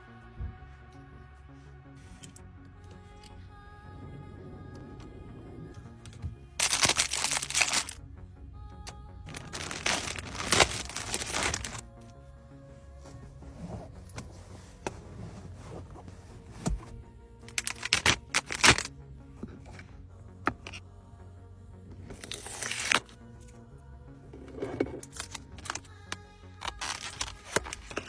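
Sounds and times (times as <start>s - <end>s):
soft background music: 0.0s - 28.0s
rustling and crackling of items: 5.8s - 8.0s, 9.3s - 11.8s, 13.0s - 18.9s, 26.6s - 28.0s.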